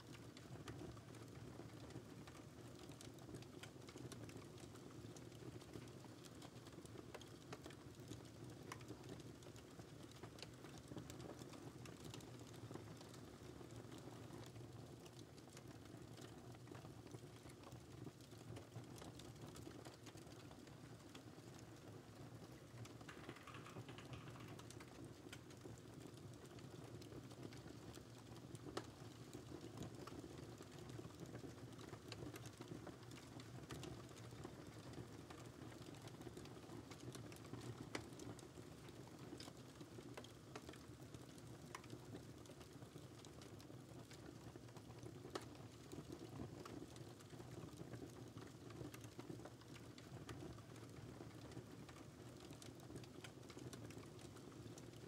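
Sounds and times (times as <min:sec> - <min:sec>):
crackling fireplace: 0:00.0 - 0:55.0
quiet typing on keyboard: 0:00.0 - 0:55.0.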